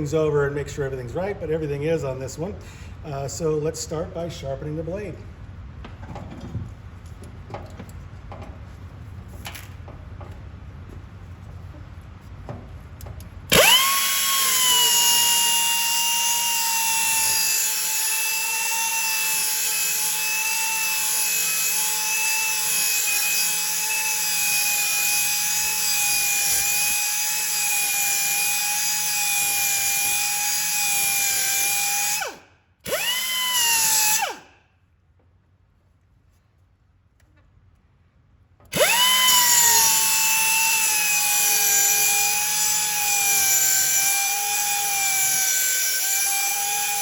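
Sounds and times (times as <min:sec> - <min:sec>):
belt grinder grinding metal: 0:13.5 - 0:34.4, 0:38.7 - 0:47.0.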